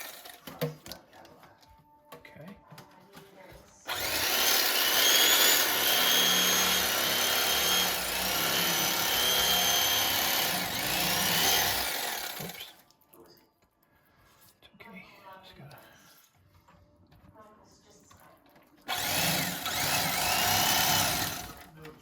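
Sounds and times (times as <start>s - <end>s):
electric knife motor whine: 3.9s - 12.8s, 18.9s - 21.7s.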